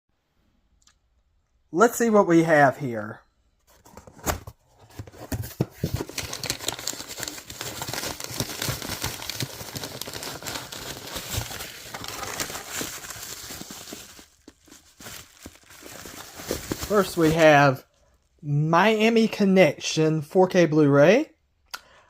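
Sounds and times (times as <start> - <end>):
packaging crinkling and rustling: 3.7 - 17.8
packaging tearing: 5.0 - 17.5.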